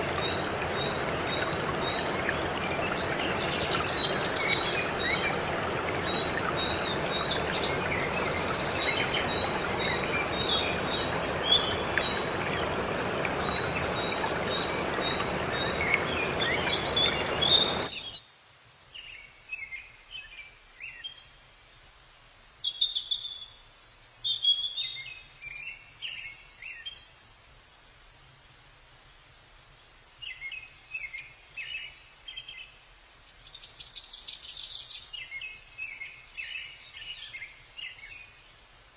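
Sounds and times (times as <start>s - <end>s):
waterfall rushing: 0.0s - 18.0s
small birds chirping: 0.0s - 18.2s.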